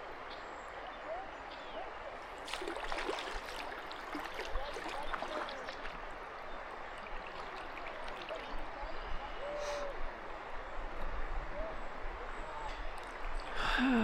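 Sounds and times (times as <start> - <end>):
river water rushing and gurgling: 0.0 - 14.0
small splashes and bubbling: 2.3 - 8.8.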